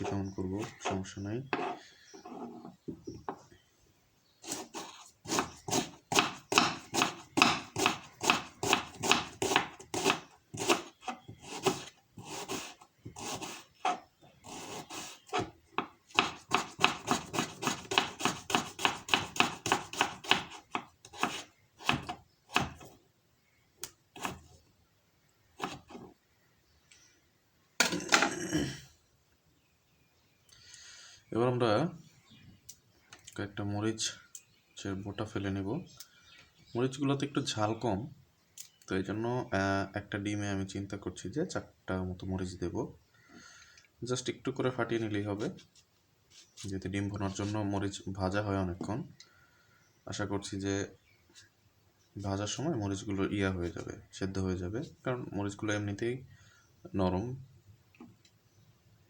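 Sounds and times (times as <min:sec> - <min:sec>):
knife chopping on cutting board: 0:04.8 - 0:13.6, 0:14.5 - 0:22.9.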